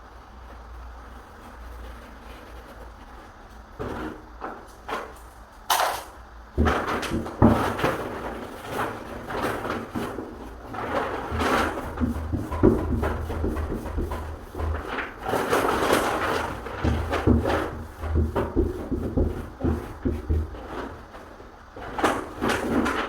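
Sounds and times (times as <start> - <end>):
scraping on wood: 0.6 - 5.9, 6.6 - 23.0
knocks on wooden door: 16.8 - 20.7.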